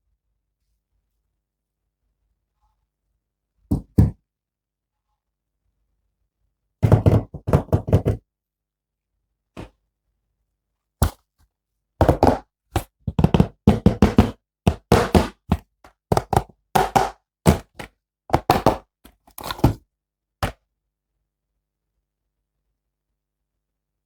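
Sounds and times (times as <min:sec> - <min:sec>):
plastic toy knocks and clacks: 0:13.1 - 0:19.8.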